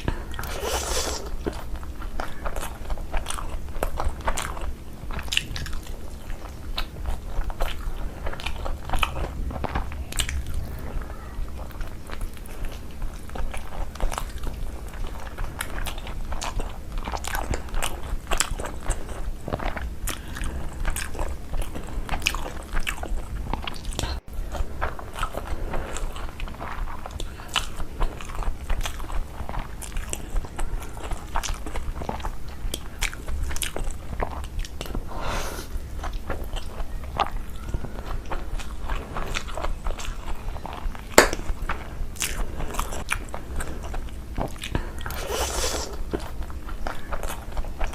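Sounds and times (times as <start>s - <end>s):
person chewing and crunching food: 0.0s - 47.9s
steady low hum: 0.0s - 47.9s.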